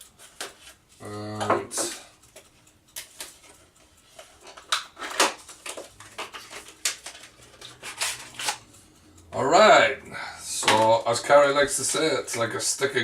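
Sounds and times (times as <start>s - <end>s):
plastic packaging crinkling: 4.2s - 8.6s.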